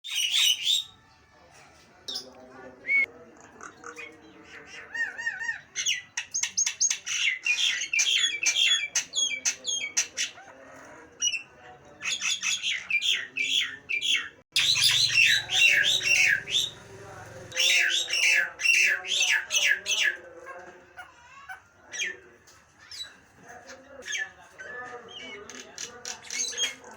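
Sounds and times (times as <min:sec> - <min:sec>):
myna bird calling: 0:02.1 - 0:20.2.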